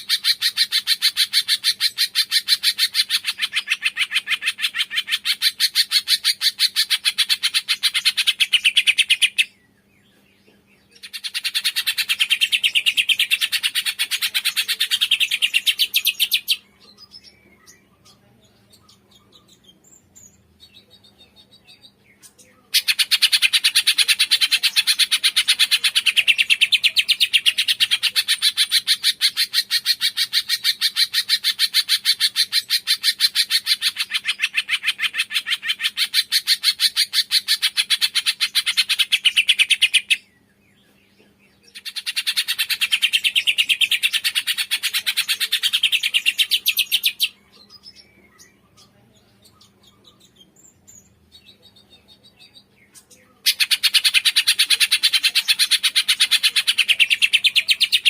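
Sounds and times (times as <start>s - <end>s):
songbird rapid chatter: 0.0s - 9.6s, 11.0s - 17.4s, 22.7s - 40.3s, 41.7s - 58.0s
faint distant bird calls: 0.0s - 58.0s.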